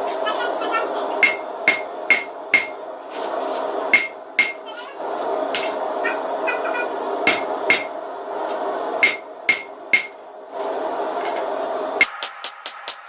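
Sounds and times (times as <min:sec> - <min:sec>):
steady hum: 0:00.0 - 0:13.0
hammer striking steel on anvil: 0:01.2 - 0:02.8, 0:03.9 - 0:04.6, 0:05.5 - 0:05.8, 0:07.3 - 0:08.0, 0:09.0 - 0:10.2, 0:12.0 - 0:13.0.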